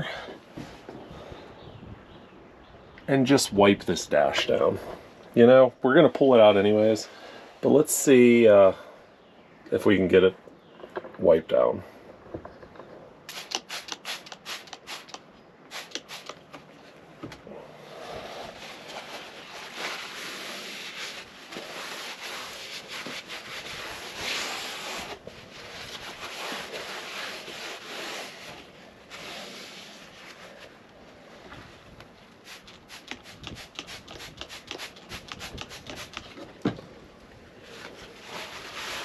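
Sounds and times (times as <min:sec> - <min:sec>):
cloth scrubbing a dashboard: 0:13.3 - 0:16.5, 0:17.8 - 0:36.3, 0:37.6 - 0:39.0.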